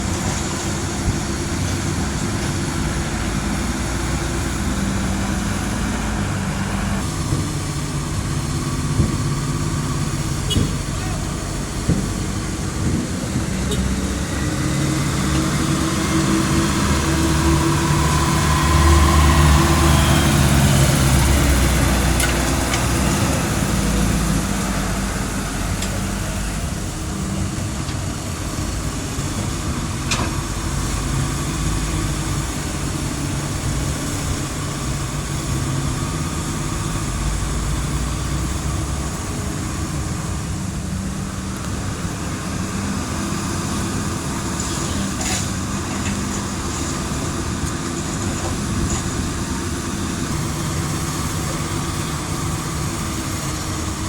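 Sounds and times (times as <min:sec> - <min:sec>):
heavy truck engine droning: 0:00.0 - 0:54.0.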